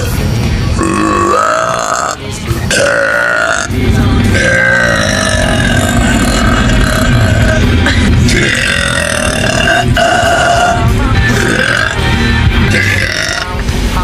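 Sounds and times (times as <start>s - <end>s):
woman burping: 0.8s - 3.7s, 4.4s - 12.0s.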